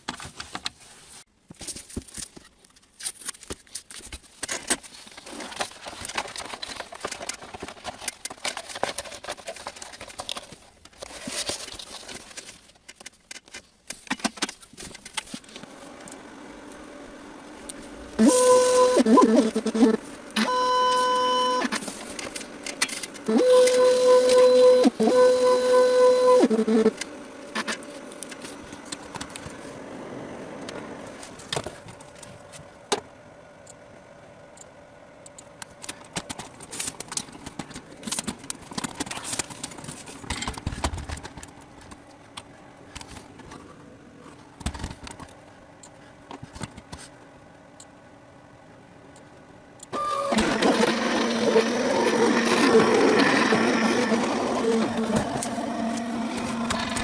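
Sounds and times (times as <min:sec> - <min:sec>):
vinyl cutter motors whining: 0:15.6 - 0:31.7, 0:49.9 - 0:57.0.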